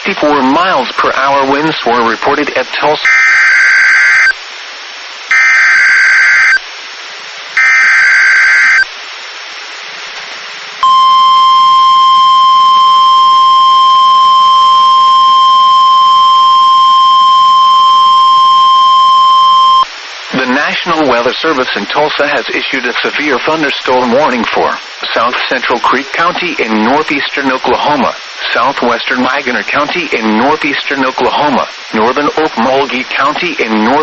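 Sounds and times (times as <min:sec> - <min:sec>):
screechy digital data bursts: 0:03.0 - 0:04.4, 0:05.3 - 0:06.6, 0:07.6 - 0:08.9
single-pitch alarm tone: 0:03.0 - 0:04.4, 0:05.3 - 0:06.6, 0:07.6 - 0:08.9, 0:10.8 - 0:19.9.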